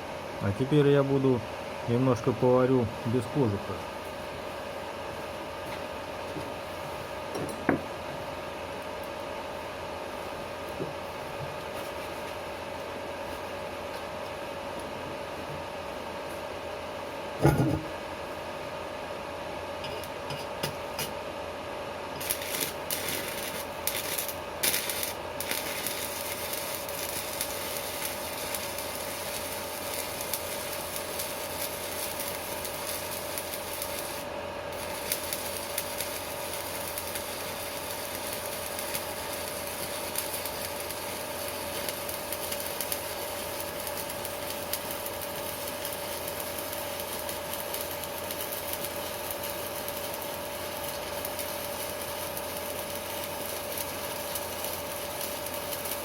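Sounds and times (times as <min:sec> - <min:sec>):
welding arc hissing and crackling: 0:07.9 - 0:14.9, 0:22.1 - 0:56.0.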